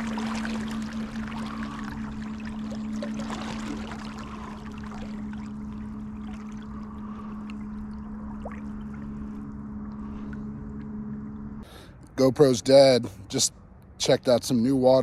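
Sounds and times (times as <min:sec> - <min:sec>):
water splashing against kayak: 0:00.0 - 0:10.4.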